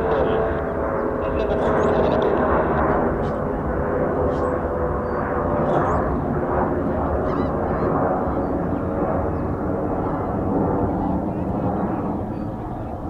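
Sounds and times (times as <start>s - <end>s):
jet engines roaring: 0.0s - 13.0s.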